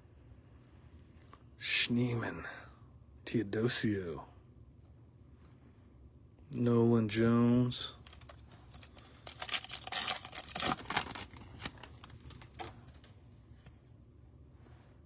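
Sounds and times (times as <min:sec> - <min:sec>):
trading cards sliding and rustling: 0:08.0 - 0:13.7.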